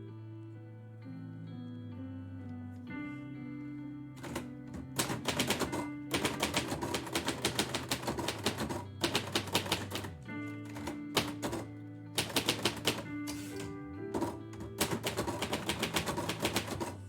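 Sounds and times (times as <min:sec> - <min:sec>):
instrumental music: 0:00.0 - 0:17.0
typewriter key strikes: 0:04.2 - 0:17.0.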